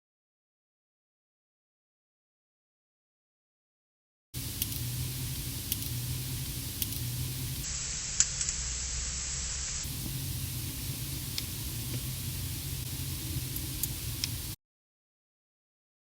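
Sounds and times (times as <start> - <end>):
sharp clicks and crackles: 4.4 - 8.6, 9.8 - 14.6
steady hiss and low hum: 4.4 - 14.6.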